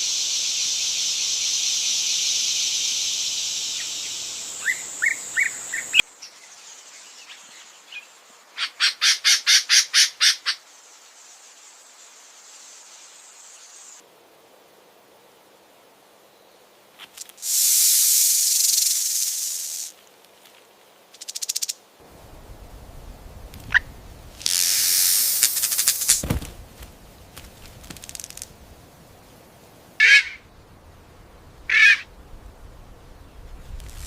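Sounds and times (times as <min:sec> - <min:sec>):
snake hissing: 0:17.4 - 0:20.0, 0:22.4 - 0:29.2
sharp bird calls: 0:30.0 - 0:30.6, 0:31.6 - 0:32.1.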